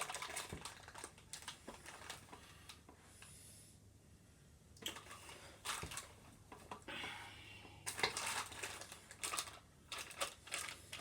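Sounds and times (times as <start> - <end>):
plastic pack crinkling: 0.0 - 2.7, 4.8 - 6.8, 7.9 - 11.0.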